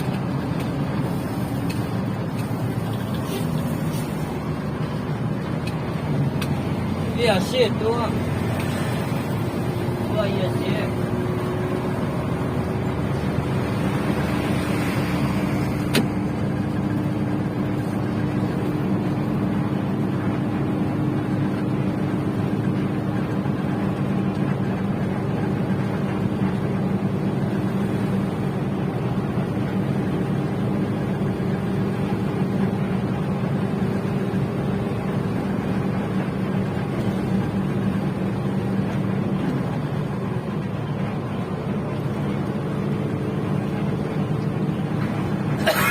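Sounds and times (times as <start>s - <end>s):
low engine drone: 0.0s - 45.9s.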